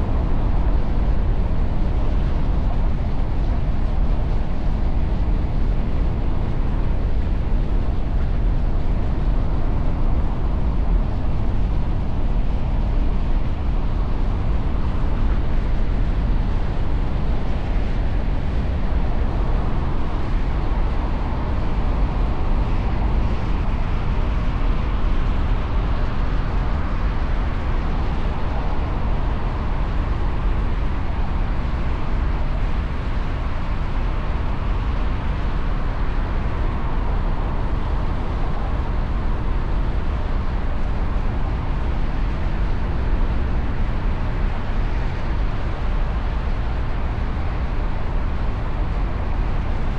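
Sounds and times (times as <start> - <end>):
city traffic rumble: 0.0 - 49.9.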